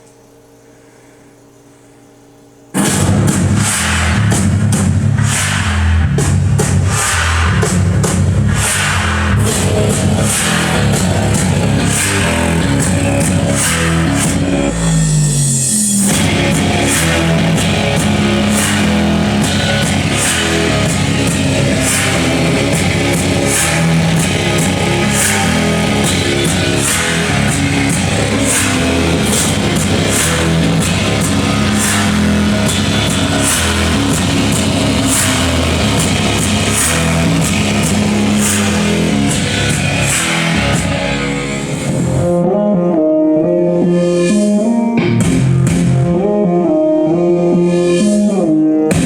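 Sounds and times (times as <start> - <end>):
rock music with guitar and drums: 9.4 - 15.1, 16.0 - 49.0.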